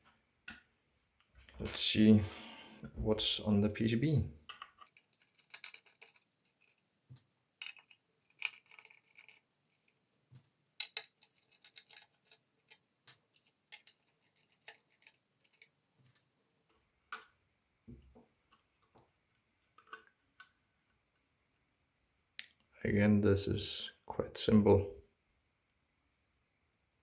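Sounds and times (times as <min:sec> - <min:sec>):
faint clicks and taps: 0:13.0 - 0:21.0.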